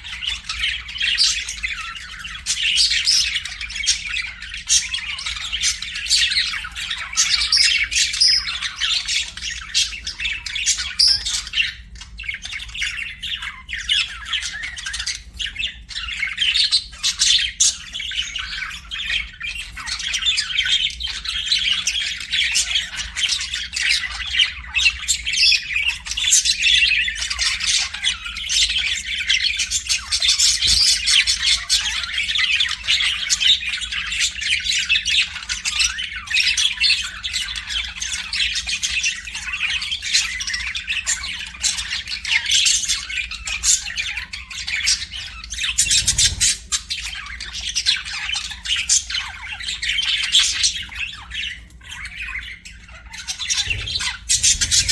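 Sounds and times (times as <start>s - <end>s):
budgerigars chirping: 0.0s - 54.9s.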